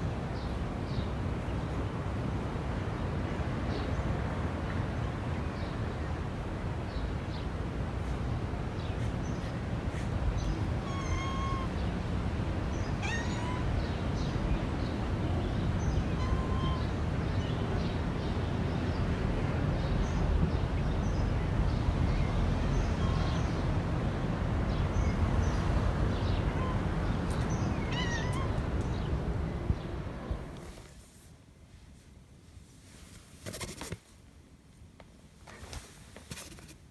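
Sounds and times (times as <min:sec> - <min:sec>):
cat meowing: 0:10.5 - 0:12.0, 0:12.7 - 0:14.3, 0:15.9 - 0:17.0, 0:26.2 - 0:29.1.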